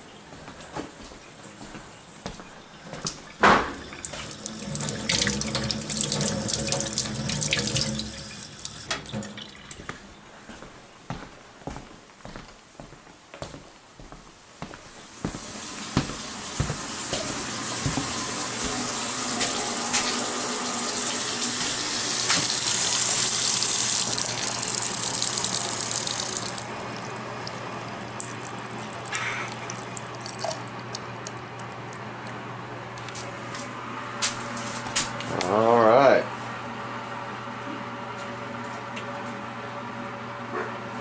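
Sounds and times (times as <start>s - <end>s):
water rushing from faucet: 3.2s - 9.8s, 15.3s - 31.1s.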